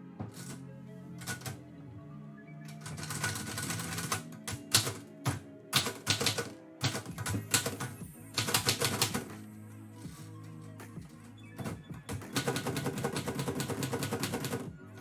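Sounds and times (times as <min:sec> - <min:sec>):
lo-fi background music: 0:00.0 - 0:15.0
typewriter keys clattering: 0:02.7 - 0:09.3.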